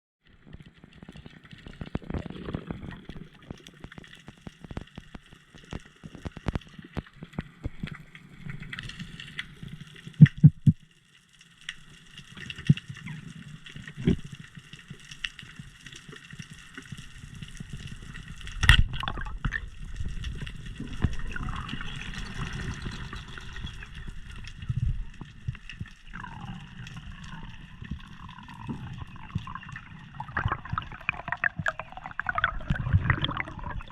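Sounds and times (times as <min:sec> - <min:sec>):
underwater crackle of clicks: 0:00.2 - 0:33.9
water sloshing and gurgling: 0:12.2 - 0:33.9.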